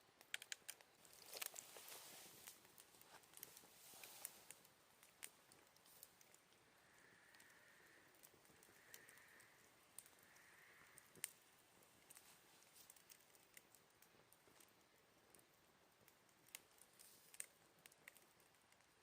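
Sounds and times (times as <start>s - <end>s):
campfire crackling and popping: 0.0s - 19.0s
insect trilling: 6.3s - 11.5s.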